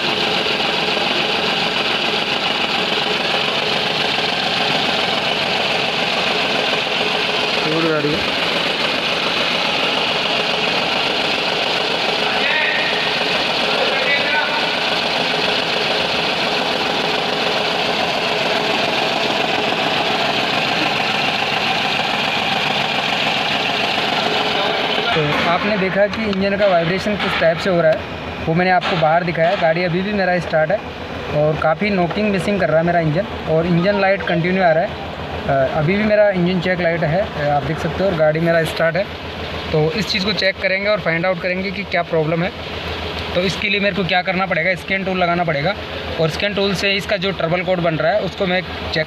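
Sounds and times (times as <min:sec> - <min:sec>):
engine idling roughly and knocking: 0:00.0 - 0:49.0.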